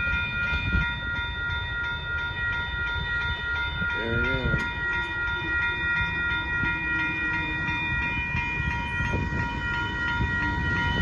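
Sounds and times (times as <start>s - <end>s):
passenger train rumbling past: 0.0s - 11.0s
steady chord of high tones: 0.0s - 11.0s.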